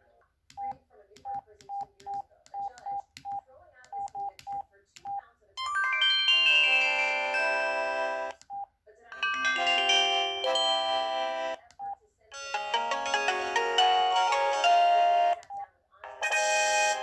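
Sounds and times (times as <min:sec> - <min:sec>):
keypad beep: 0:00.6 - 0:05.2
phone chime melodies: 0:05.6 - 0:08.4, 0:09.1 - 0:11.6, 0:12.3 - 0:17.0.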